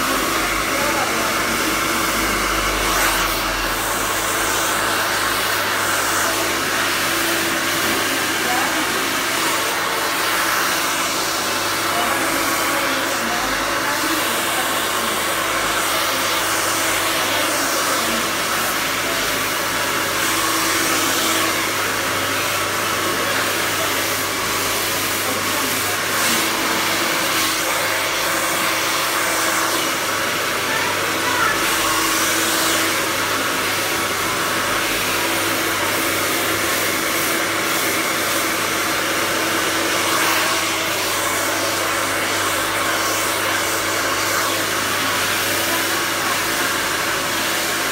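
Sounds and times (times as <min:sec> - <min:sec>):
hair dryer blowing: 0:00.0 - 0:47.9.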